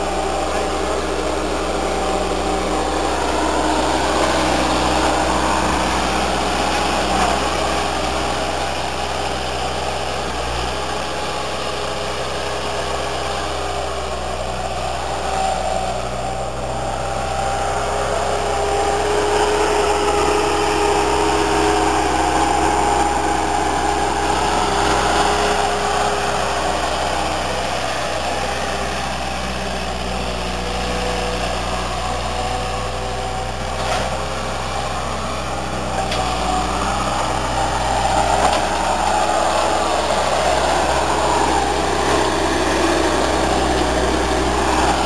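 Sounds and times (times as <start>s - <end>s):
diesel engine running: 0.0s - 45.0s.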